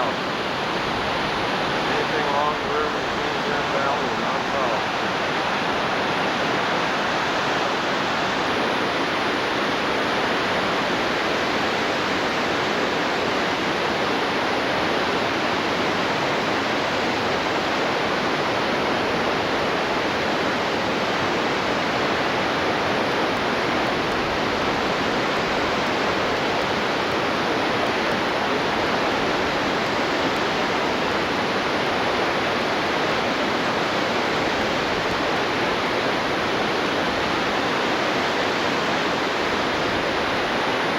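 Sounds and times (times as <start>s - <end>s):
water rushing through spillway: 0.0s - 40.9s.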